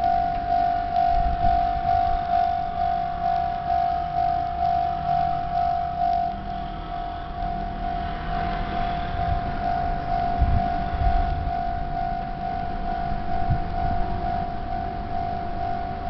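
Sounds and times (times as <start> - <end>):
level crossing electronic bell: 0.0 - 8.2
low rumble: 0.0 - 16.0.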